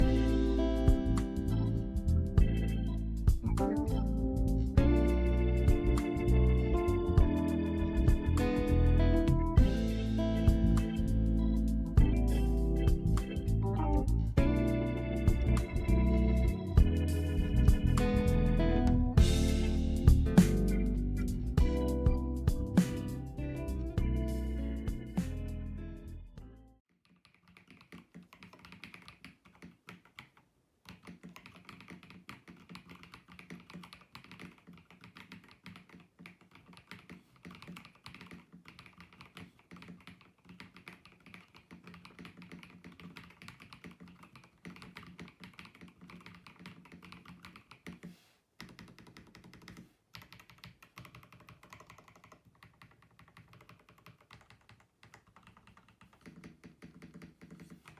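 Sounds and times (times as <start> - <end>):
mechanical keyboard typing: 27.2 - 57.9.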